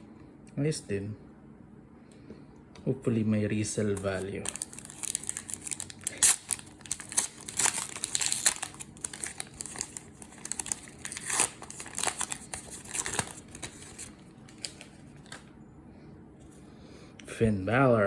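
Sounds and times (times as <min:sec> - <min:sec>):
wrapper crinkling and tearing: 0:04.1 - 0:15.4.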